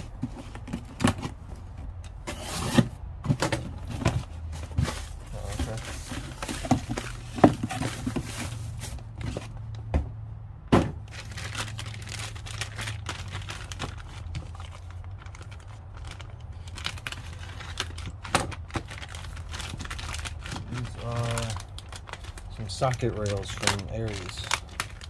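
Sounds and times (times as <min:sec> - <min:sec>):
packaging crinkling and tearing: 0:11.0 - 0:25.0.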